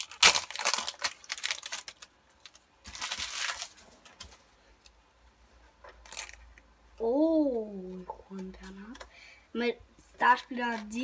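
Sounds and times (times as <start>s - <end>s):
wrapper tearing and crinkling: 0.0s - 4.0s, 6.0s - 6.4s.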